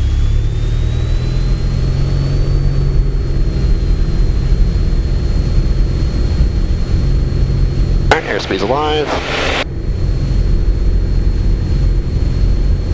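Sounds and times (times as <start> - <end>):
propeller plane engine at full power: 0.0 - 12.9
thin high whine: 8.1 - 9.6.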